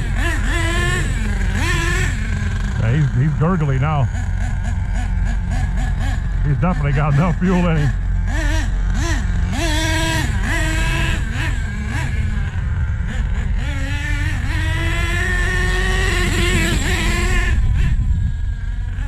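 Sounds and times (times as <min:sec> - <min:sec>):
model truck engine revving: 0:00.0 - 0:19.0.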